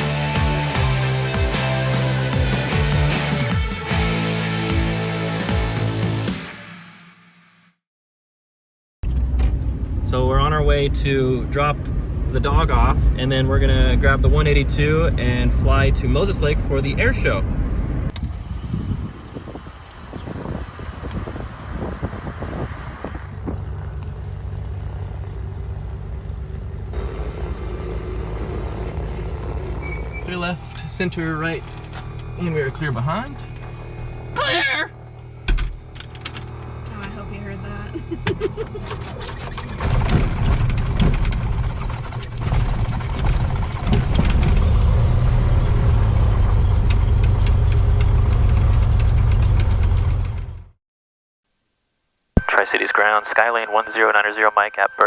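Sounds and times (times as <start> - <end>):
vehicle humming: 9.1 - 50.8.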